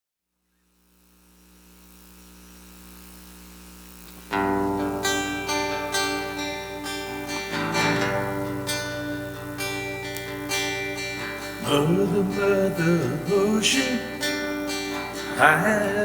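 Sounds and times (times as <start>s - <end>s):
steady low hum: 1.0s - 16.0s
guitar strumming chords: 4.3s - 16.0s.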